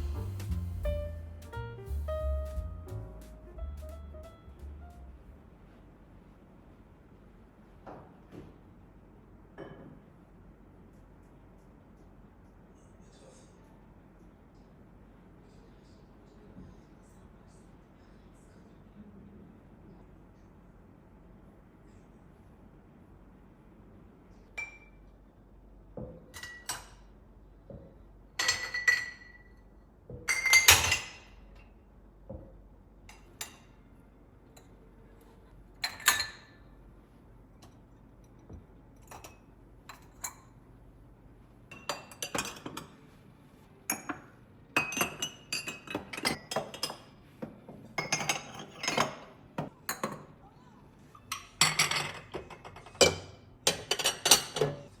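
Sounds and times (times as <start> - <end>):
glassware and dishes clinking: 9.6 - 10.0, 24.6 - 25.0, 26.0 - 27.0, 28.4 - 29.5, 30.1 - 31.3, 35.8 - 36.6, 41.7 - 43.0, 43.9 - 47.1, 48.0 - 50.4, 51.3 - 54.9.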